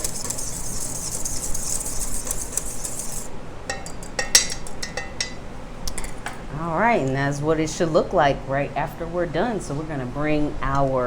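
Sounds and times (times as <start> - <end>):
whisk swishing in a bowl: 0.0 - 3.3
whisk clinking against bowl: 0.0 - 5.4.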